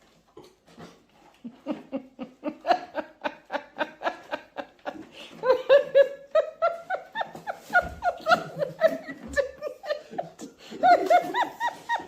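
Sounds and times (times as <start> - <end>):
laughter in rhythmic bursts: 1.4 - 12.0.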